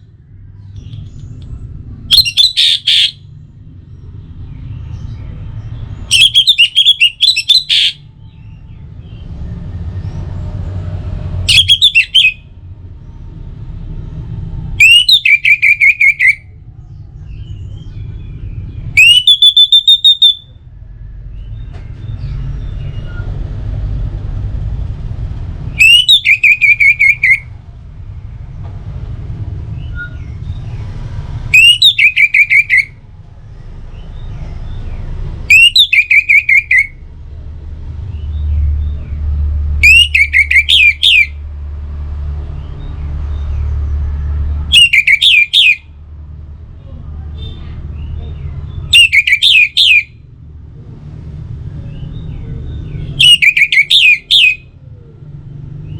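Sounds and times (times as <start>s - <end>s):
low background rumble: 0.0s - 45.0s.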